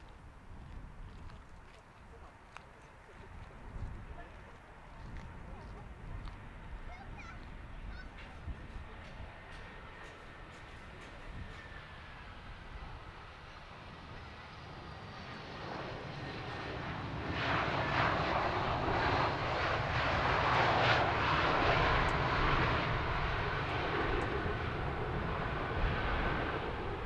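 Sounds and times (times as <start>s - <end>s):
jet engines rushing past: 5.4s - 27.0s.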